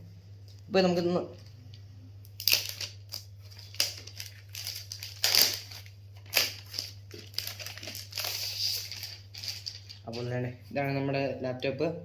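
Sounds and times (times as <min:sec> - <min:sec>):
wrapping material crinkling: 0:02.4 - 0:10.4.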